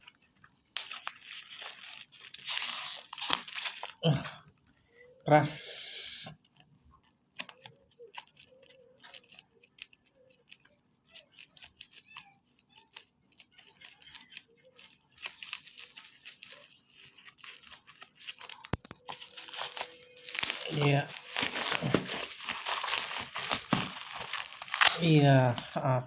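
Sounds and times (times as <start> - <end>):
packaging torn and crinkled: 0.7 - 4.0, 12.8 - 25.6.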